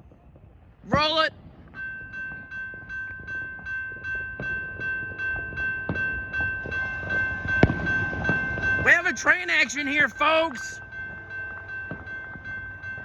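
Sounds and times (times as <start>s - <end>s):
railroad crossing bell ringing: 0.9s - 13.0s
train rumbling: 0.9s - 13.0s.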